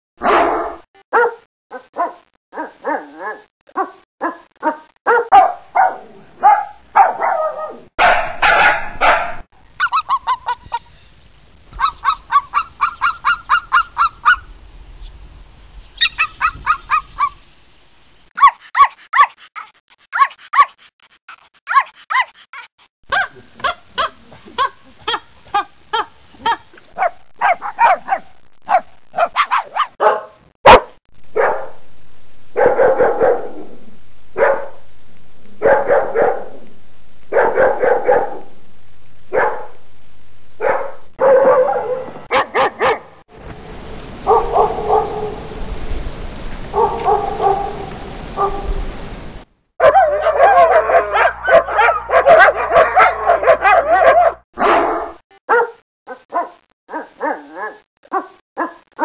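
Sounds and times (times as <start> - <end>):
dogs barking: 0.2 - 10.9, 11.8 - 14.5, 16.0 - 17.4, 18.4 - 20.7, 23.1 - 31.8, 32.6 - 33.5, 34.4 - 34.7, 35.6 - 36.5, 37.3 - 38.5, 39.3 - 39.7, 40.6 - 43.2, 44.2 - 45.6, 46.6 - 48.8, 49.8 - 59.0
steady hiss: 23.3 - 27.8, 31.2 - 41.1, 43.3 - 49.5.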